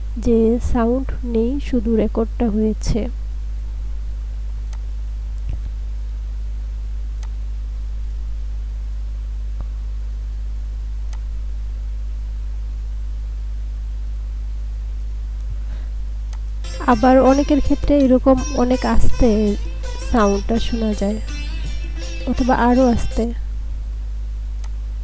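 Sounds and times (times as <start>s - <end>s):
low electrical hum with hiss: 0.0s - 25.0s
faint clicks: 4.6s - 5.8s, 11.0s - 11.3s, 24.6s - 24.8s.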